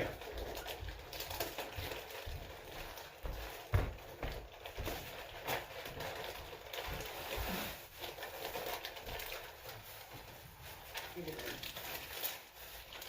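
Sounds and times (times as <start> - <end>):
paper rustling and crinkling: 0.0 - 13.0.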